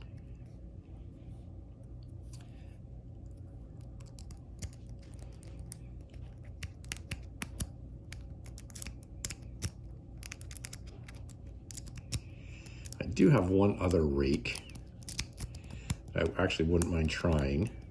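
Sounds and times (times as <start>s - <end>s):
low steady hum: 0.0s - 17.9s.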